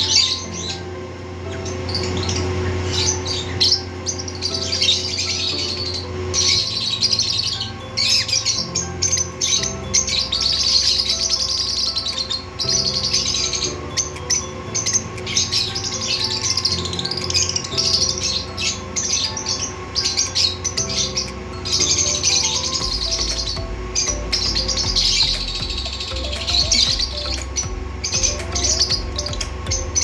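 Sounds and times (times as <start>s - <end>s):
background music with low notes: 0.0s - 30.0s
birds chirping rapidly: 0.0s - 30.0s.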